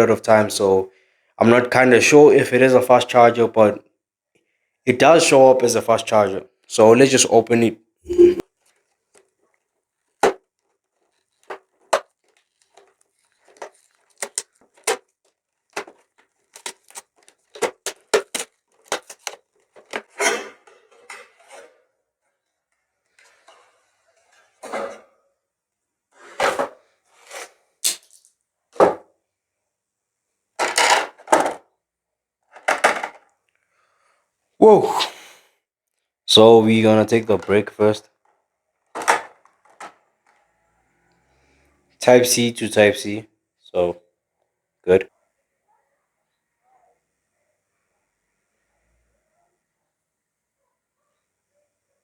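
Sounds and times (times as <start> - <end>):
packaging rustling: 8.6 - 20.2.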